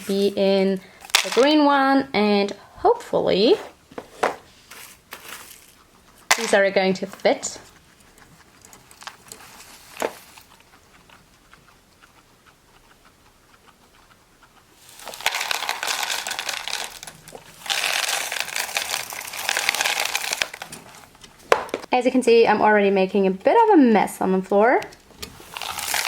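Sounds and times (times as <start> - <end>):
dry flakes pouring into plastic box: 14.9 - 20.7, 25.5 - 26.0.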